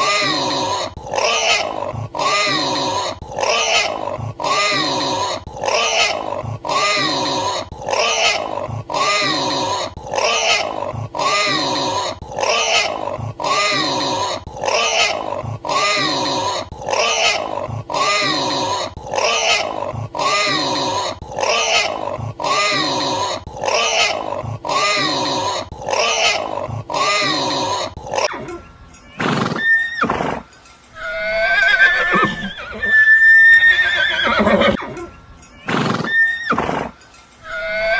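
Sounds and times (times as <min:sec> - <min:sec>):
pig squealing: 0:00.0 - 0:28.6, 0:29.2 - 0:30.4, 0:31.0 - 0:34.9, 0:35.6 - 0:37.9
horse neighing: 0:31.0 - 0:35.1, 0:37.5 - 0:37.9.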